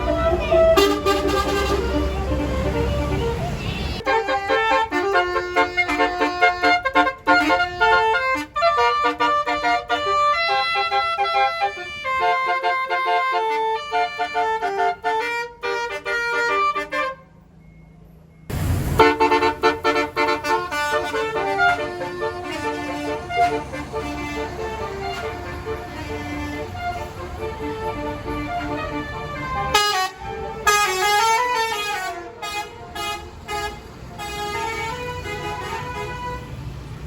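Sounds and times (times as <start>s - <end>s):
bus horn playing a melody: 0.0s - 17.8s, 19.0s - 36.7s
burst of noise: 18.5s - 19.6s.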